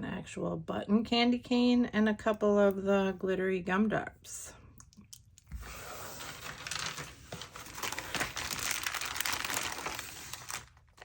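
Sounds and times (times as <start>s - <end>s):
plastic bags crinkling: 5.9s - 11.0s.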